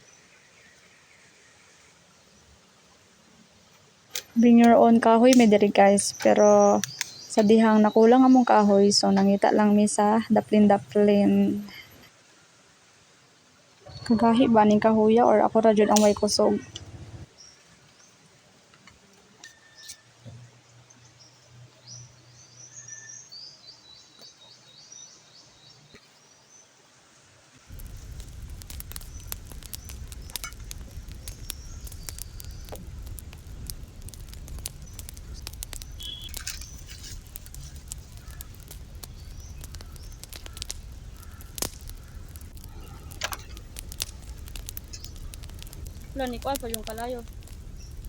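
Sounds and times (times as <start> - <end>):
small birds chirping: 4.2 - 12.0, 13.8 - 18.2, 27.7 - 48.0
rumble with sharp crackles: 13.8 - 17.3, 27.7 - 48.0.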